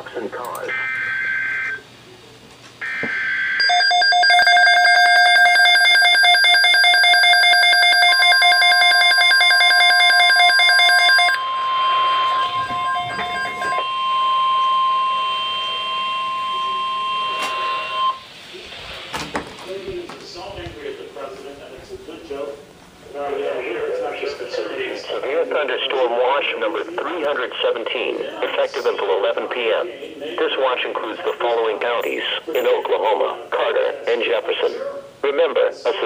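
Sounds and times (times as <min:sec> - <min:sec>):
rapidly pulsing alarm tone: 0:02.8 - 0:18.2
steady alert tone: 0:02.8 - 0:18.2.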